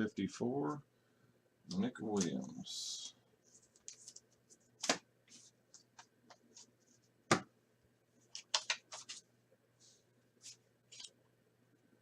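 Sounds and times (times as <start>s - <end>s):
cards scraping and clicking: 1.7s - 6.8s, 8.3s - 9.2s.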